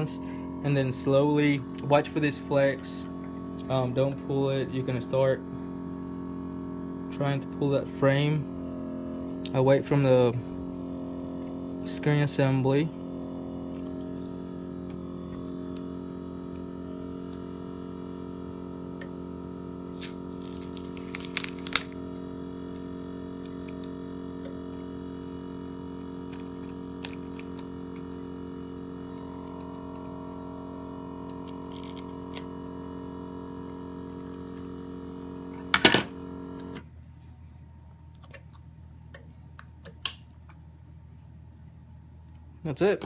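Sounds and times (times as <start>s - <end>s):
vacuum pump humming: 0.0s - 43.0s
frame crackling and snapping: 20.0s - 22.0s.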